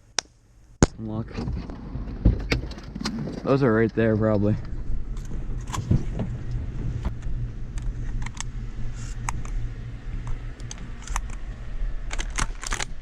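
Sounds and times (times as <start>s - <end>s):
vehicle engine humming: 0.0s - 13.0s
handling clicks and knocks: 12.1s - 13.0s.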